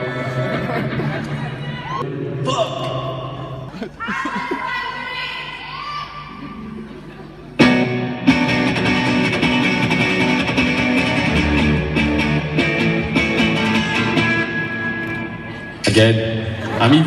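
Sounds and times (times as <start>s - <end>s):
rock band playing live: 7.6s - 15.8s.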